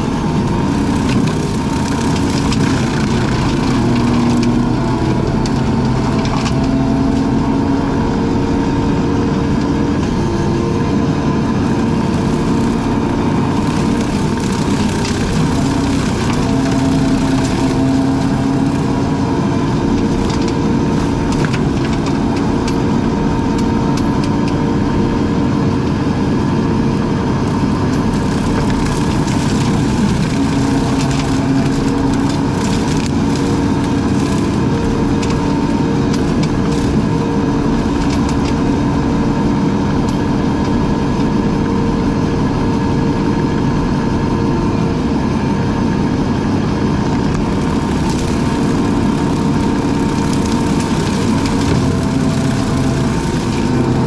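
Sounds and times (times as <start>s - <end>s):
brush cutter engine running: 0.0s - 41.6s, 46.2s - 54.0s
short cracks and clicks: 27.5s - 38.8s, 47.3s - 54.0s.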